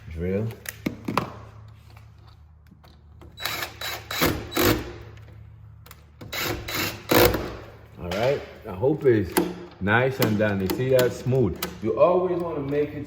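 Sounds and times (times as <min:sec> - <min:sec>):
power drill bursts: 0:03.4 - 0:04.9, 0:06.3 - 0:07.6.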